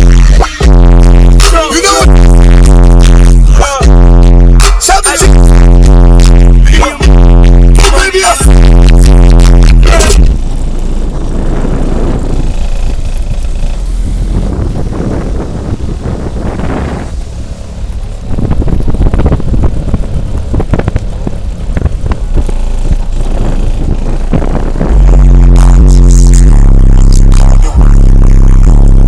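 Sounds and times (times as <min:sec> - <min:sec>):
rough steady low bass: 0:00.0 - 0:29.0
subwoofer playing loud deep bass: 0:00.0 - 0:29.0
irregular crackles: 0:07.8 - 0:26.4.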